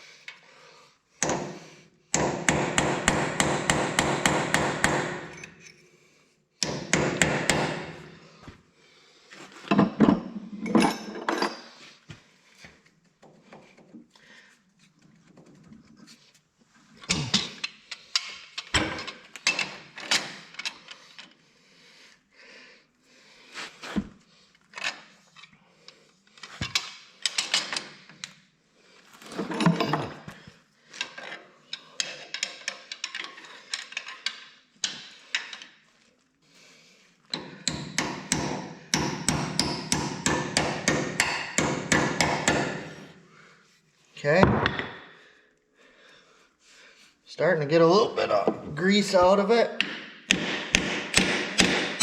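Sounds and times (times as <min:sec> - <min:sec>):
hammer striking metal: 0:49.8 - 0:52.0.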